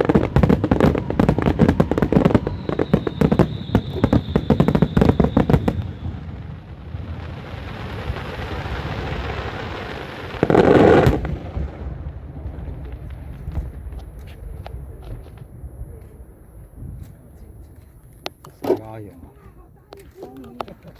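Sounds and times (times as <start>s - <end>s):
loud dense burst: 0.0s - 12.5s
sharp bangs and crackles: 0.0s - 15.4s.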